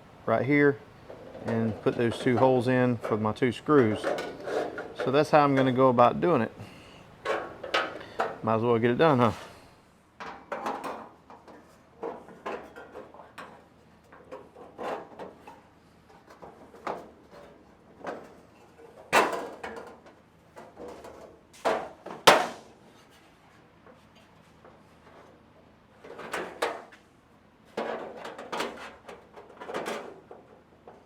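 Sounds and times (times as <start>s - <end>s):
metal parts knocking and clanking: 3.8s - 5.8s, 7.2s - 8.4s.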